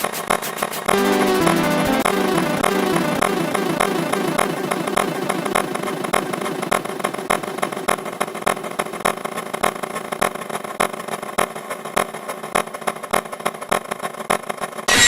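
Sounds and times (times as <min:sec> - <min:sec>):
dense harsh layered alarm tone: 0:01.0 - 0:05.9.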